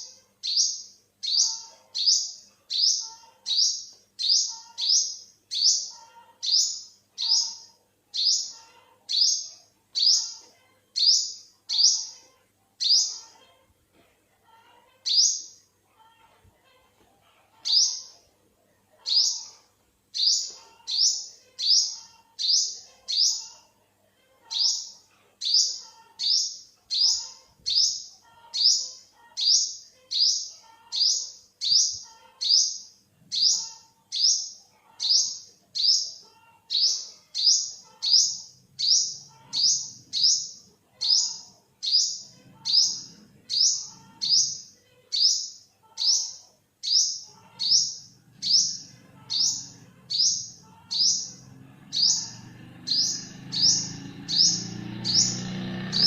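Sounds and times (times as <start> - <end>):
sunbird calling: 46.8 - 56.0.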